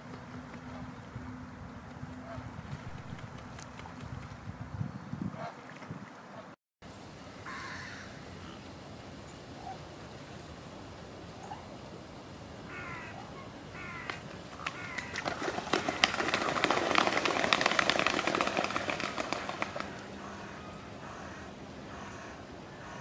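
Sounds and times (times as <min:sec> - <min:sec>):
bird splashing and wing-beating: 0:00.0 - 0:04.7, 0:05.4 - 0:06.4, 0:12.7 - 0:23.0.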